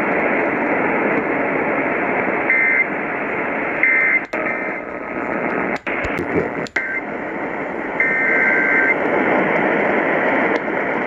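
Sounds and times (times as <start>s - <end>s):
radio static hiss: 3.0s - 11.0s.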